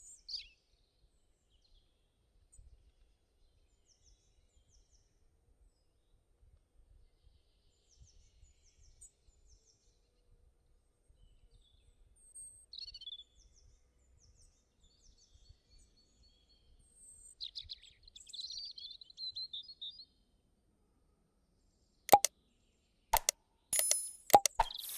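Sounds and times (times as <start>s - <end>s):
sharp click: 23.2s - 24.9s.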